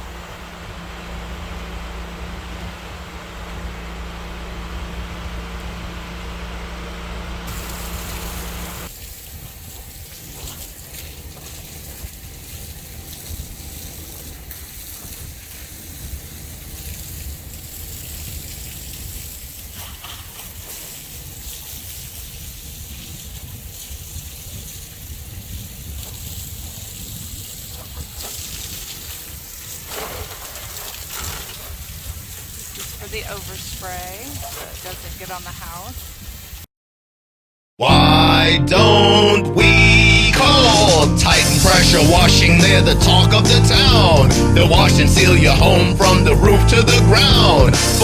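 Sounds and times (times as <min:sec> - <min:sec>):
low machine hum: 0:00.0 - 0:09.1, 0:37.9 - 0:48.0
water spraying from hose: 0:00.0 - 0:36.7, 0:40.7 - 0:48.0.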